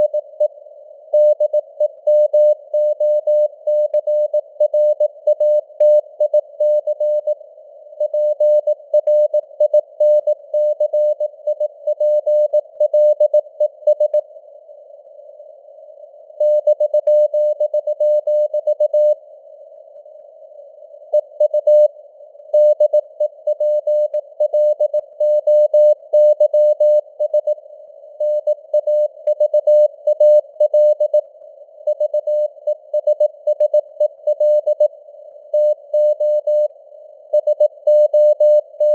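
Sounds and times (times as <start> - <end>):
morse code beeps: 22.6 - 27.6, 28.2 - 31.2, 31.9 - 34.9, 35.5 - 36.7, 37.4 - 38.9.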